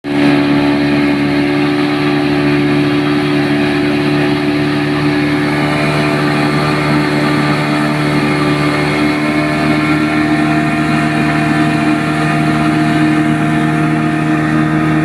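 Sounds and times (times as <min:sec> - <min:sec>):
engine running steadily: 0:00.0 - 0:15.0.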